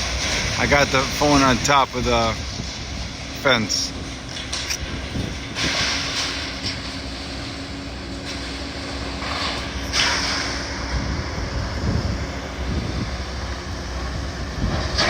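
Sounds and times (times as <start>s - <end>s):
debris noise: 0.0s - 2.4s, 3.6s - 7.6s, 8.2s - 11.0s
demolition machine engine: 0.0s - 15.0s
wind buffeting microphone: 0.0s - 15.0s.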